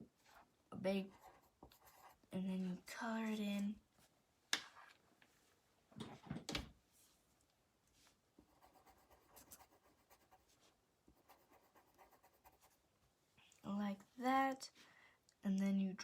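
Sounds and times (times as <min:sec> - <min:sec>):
pencil scratching on paper: 0:01.0 - 0:02.3, 0:08.4 - 0:12.8.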